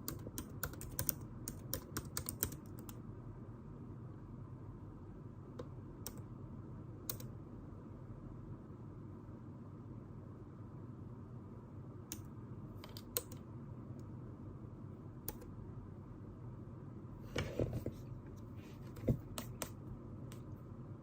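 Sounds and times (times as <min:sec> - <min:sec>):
low room hum: 0:00.0 - 0:21.0
light clicks and taps at desk: 0:18.8 - 0:20.5.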